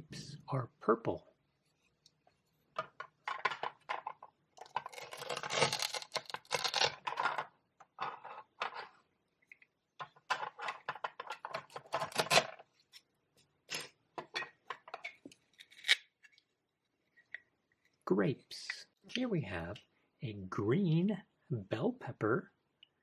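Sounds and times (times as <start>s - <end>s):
velcro pulled apart: 15.5s - 16.1s.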